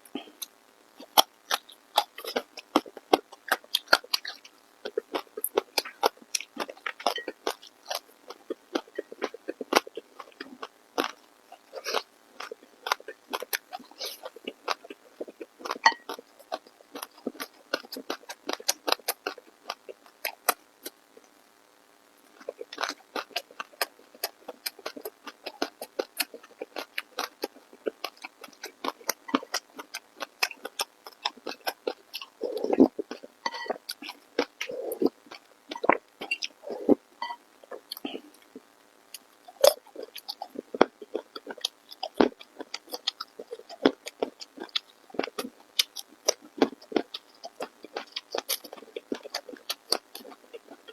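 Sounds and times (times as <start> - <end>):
wet smacking and chewing: 0.2 - 20.6, 22.4 - 38.5, 39.2 - 50.9
low mouth sound: 32.3 - 35.2.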